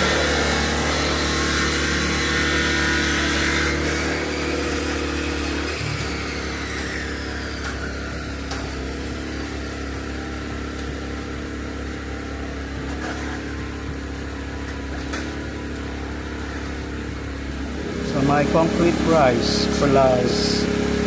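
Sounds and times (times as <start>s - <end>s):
engine idling: 16.4s - 21.0s.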